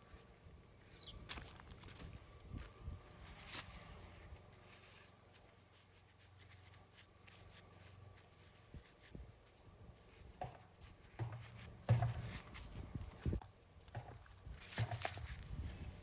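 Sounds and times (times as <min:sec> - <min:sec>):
thumps: 0:10.4 - 0:12.5.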